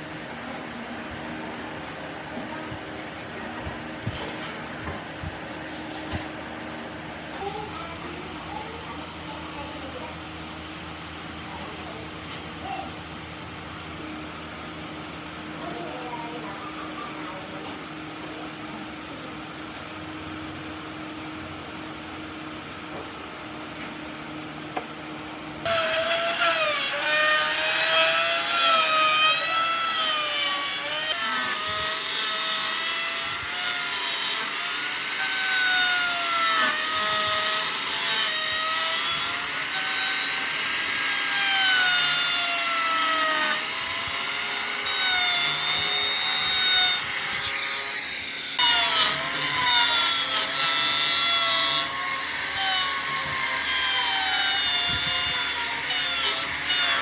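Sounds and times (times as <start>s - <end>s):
power tool motor whining: 23.2s - 57.0s.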